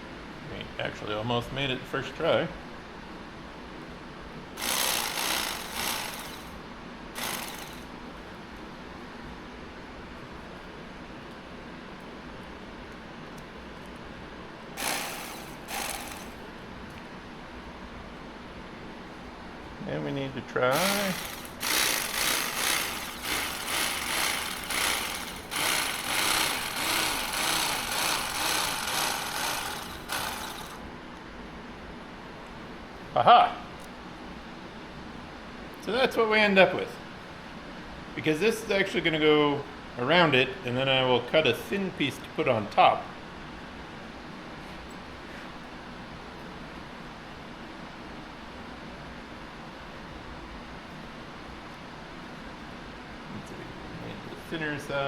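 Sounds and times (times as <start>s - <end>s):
hand tool rasping: 4.6s - 6.5s, 7.2s - 7.9s, 14.8s - 16.4s, 20.7s - 30.8s.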